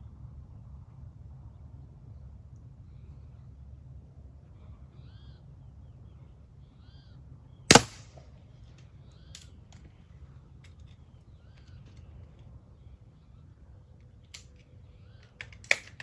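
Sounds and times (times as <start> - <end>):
pellet pistol shot: 7.7 - 8.2.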